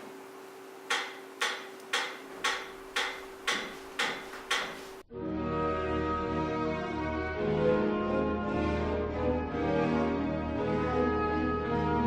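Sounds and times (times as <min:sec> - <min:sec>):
music: 0:05.1 - 0:12.0.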